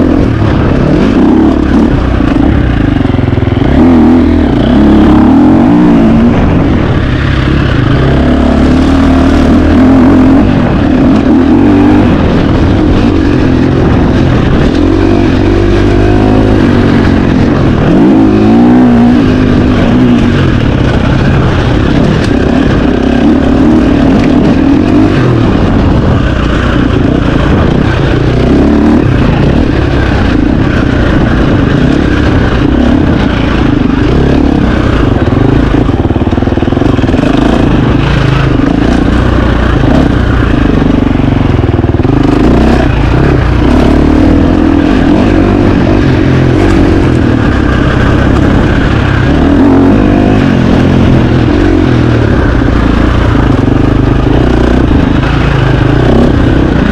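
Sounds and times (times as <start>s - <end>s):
dirt bike engine revving: 0.0s - 56.9s.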